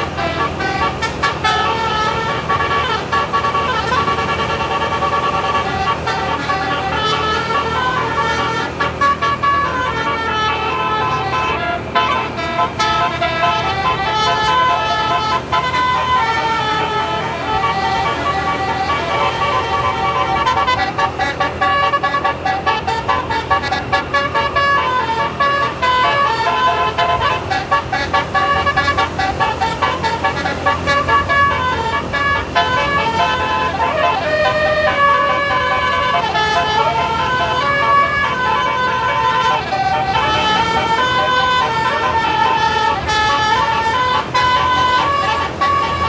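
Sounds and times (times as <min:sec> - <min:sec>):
bus engine low hum: 0:00.0 - 0:46.0
bus horn playing a tune: 0:00.0 - 0:46.0.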